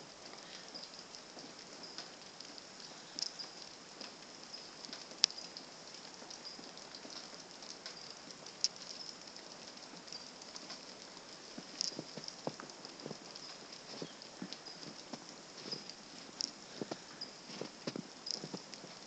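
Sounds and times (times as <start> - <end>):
light ticks pattering: 0.0 - 19.0
soft high hiss: 0.0 - 19.0.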